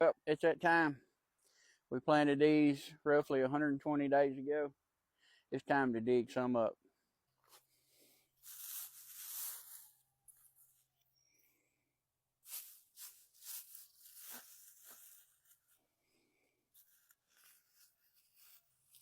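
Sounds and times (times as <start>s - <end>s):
soil scraping and crunching: 8.4s - 9.9s, 12.5s - 15.8s.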